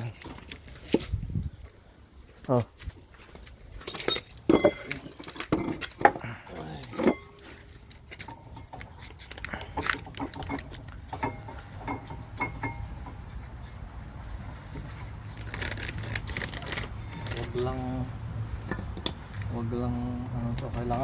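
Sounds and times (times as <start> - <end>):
metallic clinks of hand tools: 20.4 - 21.0.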